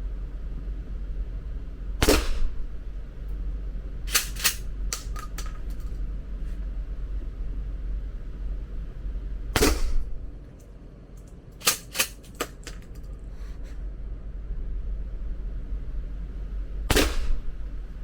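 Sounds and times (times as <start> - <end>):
gunshots: 2.0 - 2.6, 9.6 - 10.1, 16.9 - 17.4.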